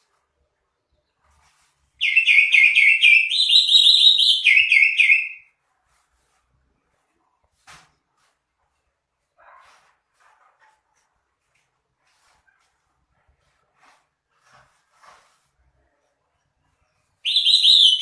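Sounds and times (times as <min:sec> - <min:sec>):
bird whistling rapid notes: 0:02.0 - 0:05.4, 0:17.2 - 0:18.0.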